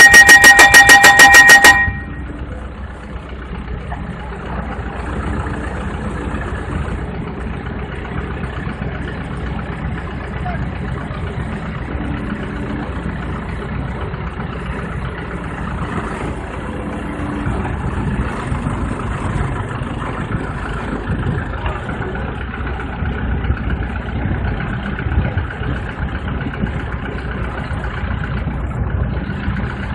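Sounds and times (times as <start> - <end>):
pile rig engine running: 0.0 - 29.9.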